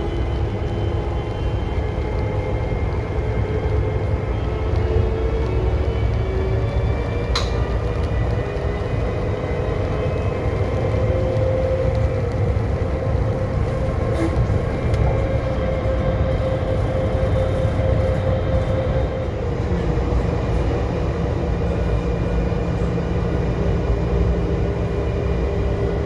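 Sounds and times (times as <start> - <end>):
metro car rumble: 0.0 - 26.0.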